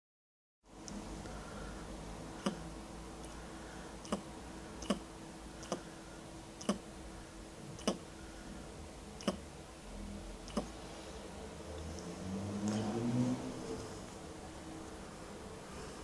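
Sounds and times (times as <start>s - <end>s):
rabbit hiccuping clicks: 4.8s - 5.0s, 6.6s - 6.8s, 7.8s - 8.0s, 9.2s - 9.4s, 10.5s - 10.7s.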